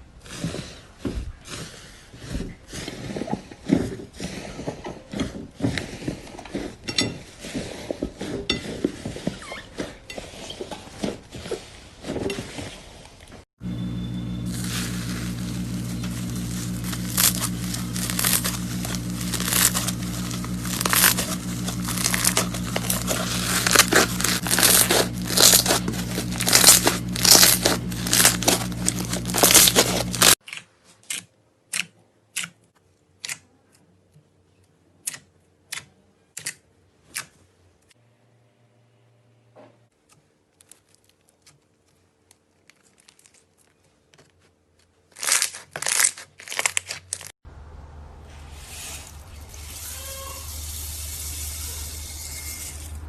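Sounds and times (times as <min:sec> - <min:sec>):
low hum: 0:13.6 - 0:30.4
slime crackling and popping: 0:14.5 - 0:30.4.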